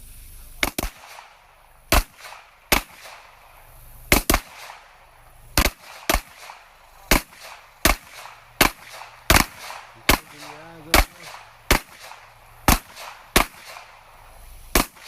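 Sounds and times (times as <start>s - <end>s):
handgun shots: 0.6s - 1.3s, 4.1s - 4.8s, 5.6s - 14.0s, 14.7s - 15.0s.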